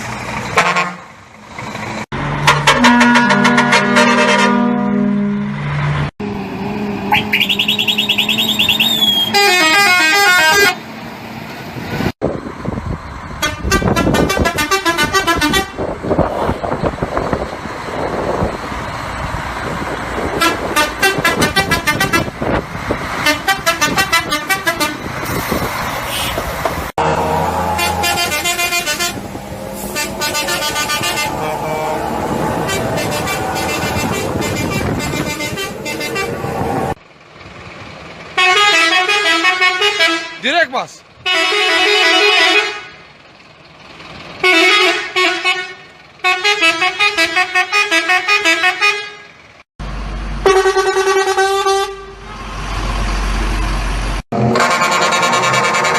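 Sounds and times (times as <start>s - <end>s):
musical vehicle horns: 0.5s - 1.1s, 2.4s - 5.6s, 7.1s - 10.8s, 13.4s - 15.9s, 20.4s - 22.6s, 23.2s - 36.9s, 38.4s - 40.5s, 41.2s - 43.0s, 44.4s - 49.4s, 50.4s - 52.5s, 54.4s - 55.9s.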